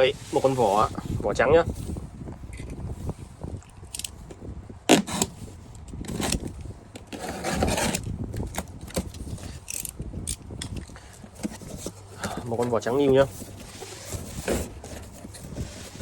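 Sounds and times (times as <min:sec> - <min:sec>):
scraping and rustling of boxes: 0:00.0 - 0:01.3, 0:06.1 - 0:09.7, 0:11.0 - 0:16.0.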